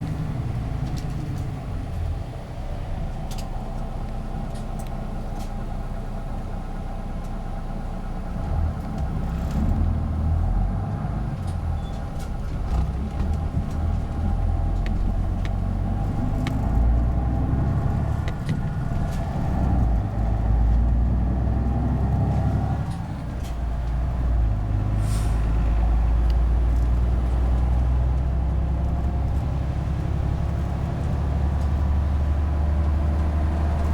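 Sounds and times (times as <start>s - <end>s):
bus engine running: 0.0s - 33.9s.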